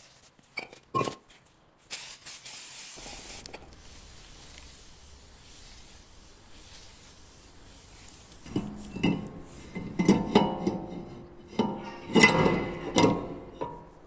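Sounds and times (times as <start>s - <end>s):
metal tools clanking: 8.4s - 14.0s.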